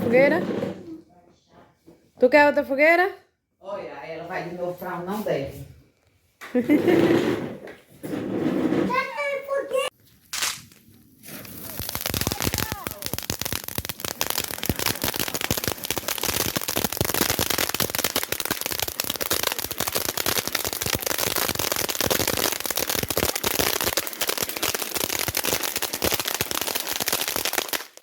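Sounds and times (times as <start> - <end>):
fireworks crackling: 10.2 - 28.0.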